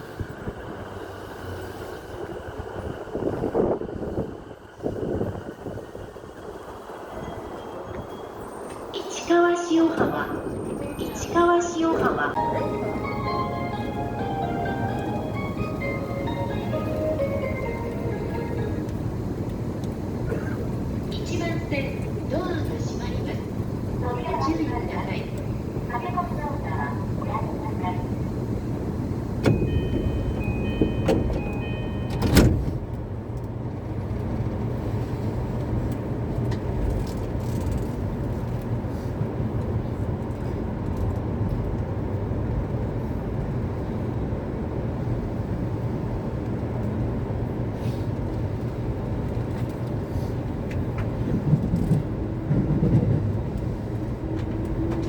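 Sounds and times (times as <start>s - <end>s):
train low rumble: 0.0s - 55.0s
train doors shutting thud: 29.3s - 33.0s
door-closing chime beeps: 29.4s - 32.6s.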